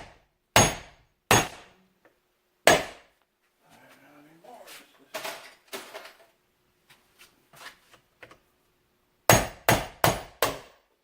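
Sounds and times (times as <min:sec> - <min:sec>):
hammer striking metal: 0:00.0 - 0:01.7, 0:02.7 - 0:03.0, 0:09.3 - 0:10.8.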